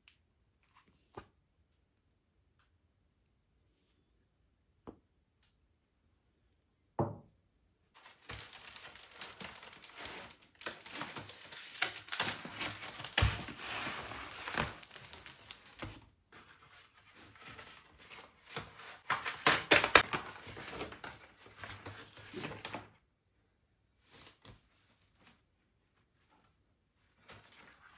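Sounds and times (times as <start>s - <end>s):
crinkling and rustling: 8.0s - 23.0s, 24.0s - 27.9s.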